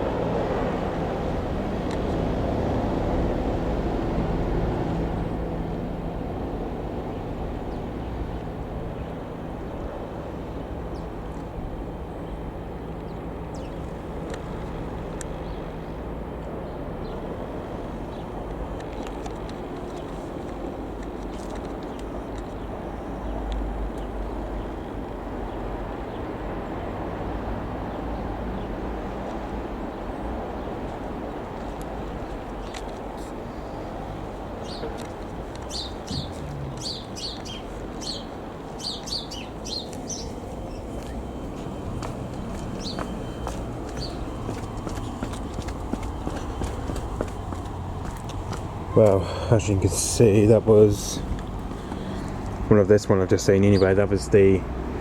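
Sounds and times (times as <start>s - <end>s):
light aircraft engine droning: 0.0s - 55.0s
wind on microphone: 32.1s - 49.0s.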